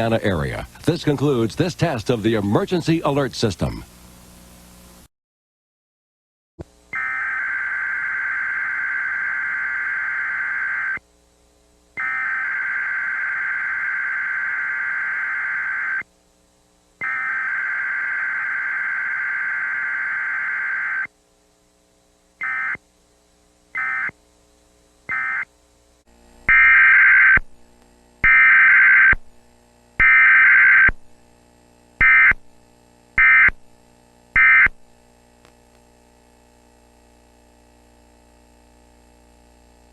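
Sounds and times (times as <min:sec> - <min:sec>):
buzzy screeching digital tones: 0:07.0 - 0:11.0, 0:12.0 - 0:16.0, 0:17.0 - 0:21.1, 0:26.5 - 0:27.4.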